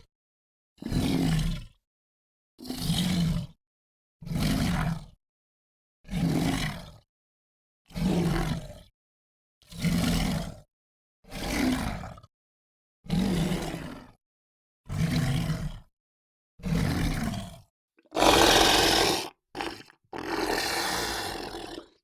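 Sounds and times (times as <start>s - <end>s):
monster roars: 18.1s - 22.0s.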